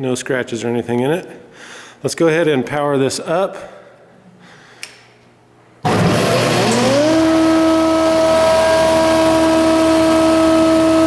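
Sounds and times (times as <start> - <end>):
planer machine whining: 5.8 - 11.0.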